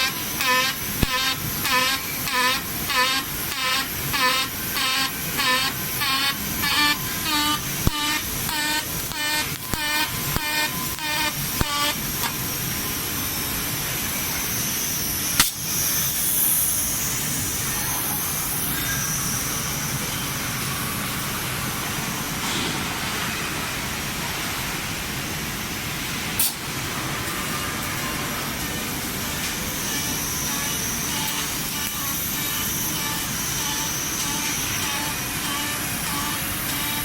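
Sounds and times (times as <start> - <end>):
welding arc hissing: 0.0 - 23.8, 28.6 - 37.0
sharp click: 15.4 - 15.6.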